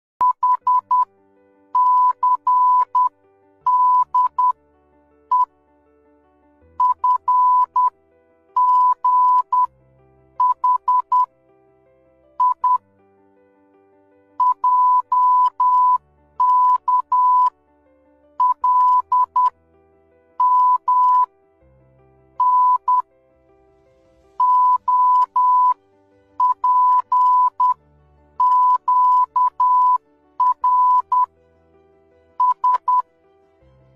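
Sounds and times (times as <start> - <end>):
morse code beeps: 0.2 - 1.1, 1.8 - 3.1, 3.7 - 4.6, 5.3 - 5.5, 6.8 - 7.9, 8.6 - 9.7, 10.4 - 11.3, 12.4 - 12.8, 14.4 - 17.5, 18.4 - 19.5, 20.4 - 21.3, 22.4 - 23.1, 24.4 - 25.8, 26.4 - 27.8, 28.4 - 31.3, 32.4 - 33.0.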